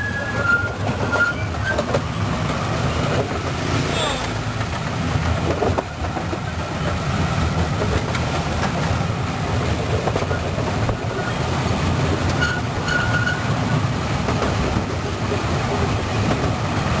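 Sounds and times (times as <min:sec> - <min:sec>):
high wheel squeal: 0:00.0 - 0:02.0, 0:12.3 - 0:13.8
trolley train rumbling and rattling: 0:00.0 - 0:17.0.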